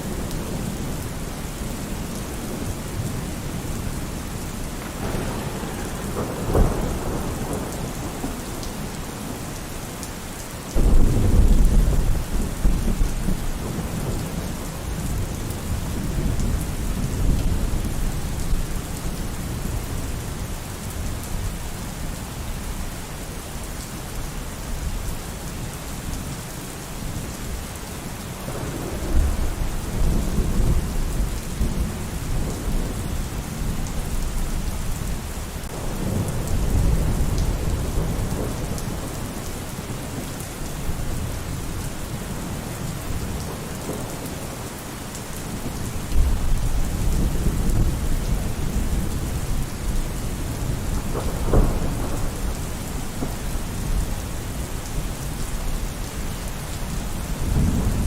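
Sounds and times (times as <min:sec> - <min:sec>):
heavy rain: 0:00.0 - 0:58.0
thunder rumbling: 0:04.8 - 0:09.6, 0:10.8 - 0:18.1, 0:28.4 - 0:42.4, 0:45.4 - 0:54.9, 0:57.2 - 0:58.0.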